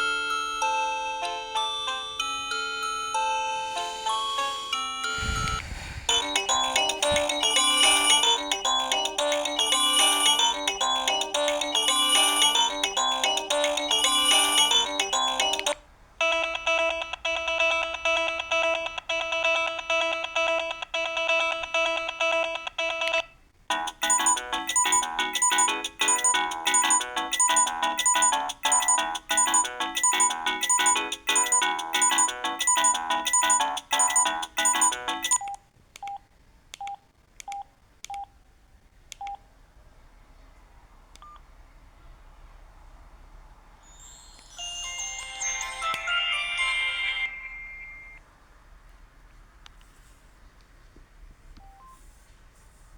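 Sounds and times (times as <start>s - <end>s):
mobile phone ringtone melodies: 0.0s - 35.5s, 43.9s - 48.2s
short keypad beeps: 24.0s - 36.2s.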